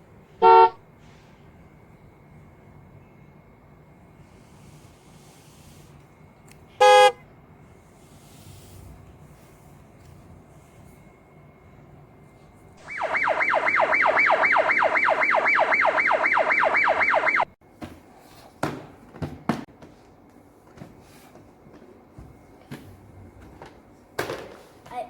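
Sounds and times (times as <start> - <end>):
electronic toy siren: 0.4 - 0.8, 6.8 - 7.2, 12.8 - 17.5.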